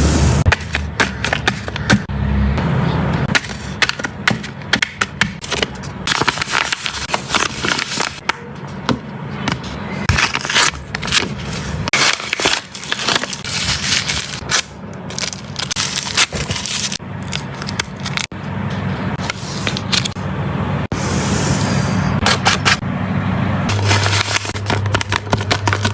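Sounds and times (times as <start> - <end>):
plastic wrapper crinkling: 10.1 - 18.3, 23.7 - 25.9
steady low hum: 16.8 - 25.9.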